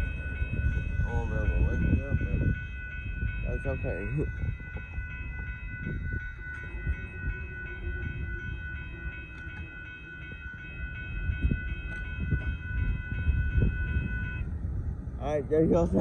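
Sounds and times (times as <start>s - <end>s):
crossing bell dinging: 0.0s - 14.6s.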